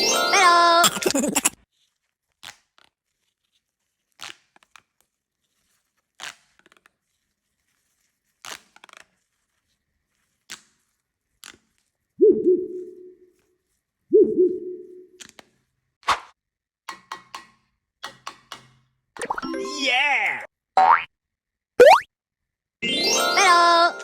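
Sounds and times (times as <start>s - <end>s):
wobbling toy-like tone: 21.8s - 22.1s.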